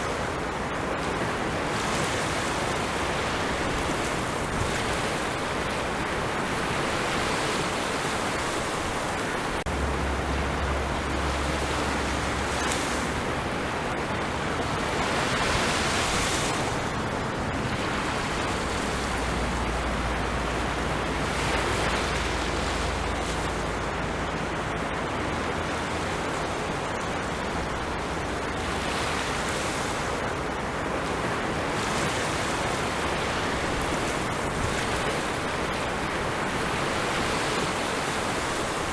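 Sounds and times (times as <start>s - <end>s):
sea waves breaking on shore: 0.0s - 38.9s.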